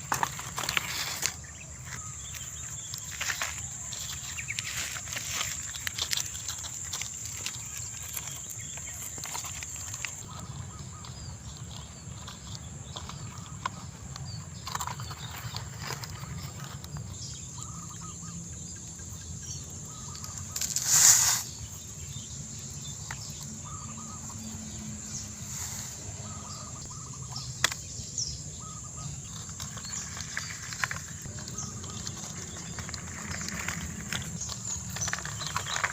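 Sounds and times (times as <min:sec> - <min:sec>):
scattered ticks: 0:00.1 - 0:17.8.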